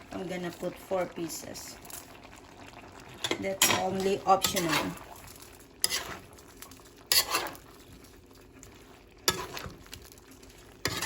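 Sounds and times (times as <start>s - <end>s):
metal utensil scraping pot: 3.2s - 6.3s, 7.1s - 7.6s, 9.2s - 9.8s, 10.8s - 11.0s.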